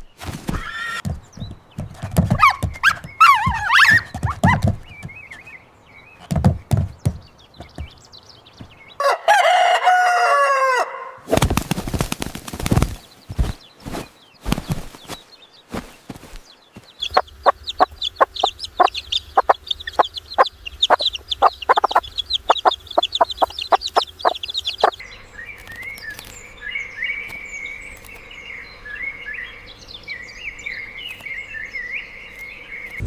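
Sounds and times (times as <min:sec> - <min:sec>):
chickens clucking: 0:16.8 - 0:26.3
high-pitched bird chirping: 0:16.9 - 0:33.0.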